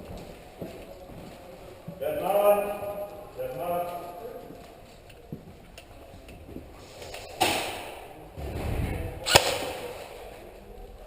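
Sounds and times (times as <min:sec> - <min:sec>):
airsoft gun cracks: 0:09.3 - 0:10.0.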